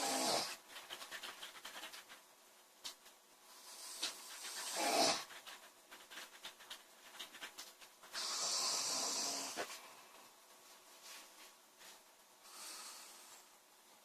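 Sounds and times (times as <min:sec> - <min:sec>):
girl snoring: 0:00.0 - 0:00.6, 0:04.7 - 0:05.2, 0:08.2 - 0:09.7.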